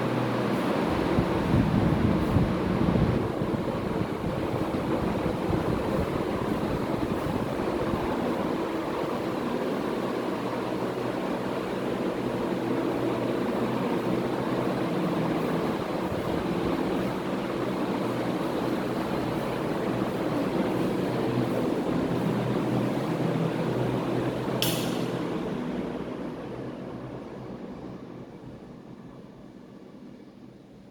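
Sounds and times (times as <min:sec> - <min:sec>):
ceiling fan air rushing: 0:00.0 - 0:30.9.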